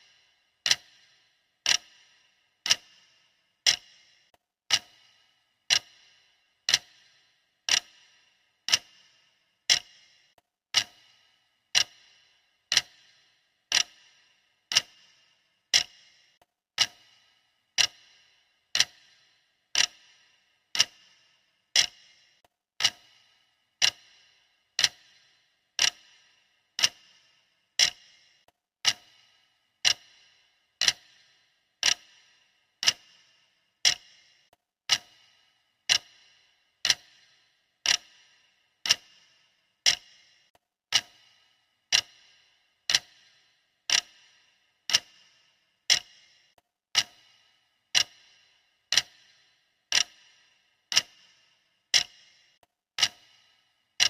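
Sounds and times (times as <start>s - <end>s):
clock ticking: 0.0s - 54.0s.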